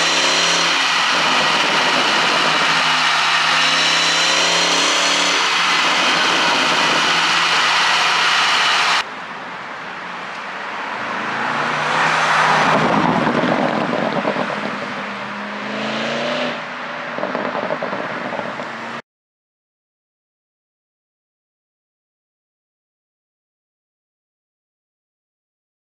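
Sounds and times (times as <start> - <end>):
car engine revving: 0.0 - 9.1, 10.8 - 19.0
exhaust crackles and pops: 17.2 - 18.8.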